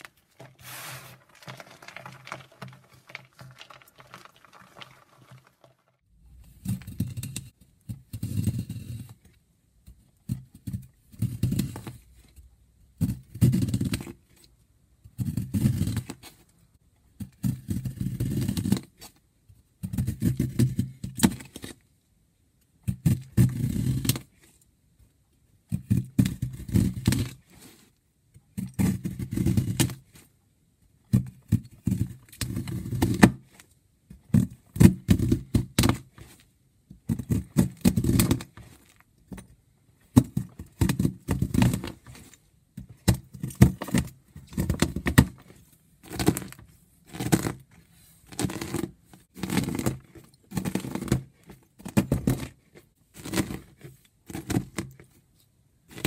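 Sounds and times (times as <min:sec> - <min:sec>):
chalk block crunching: 0:00.0 - 0:05.9.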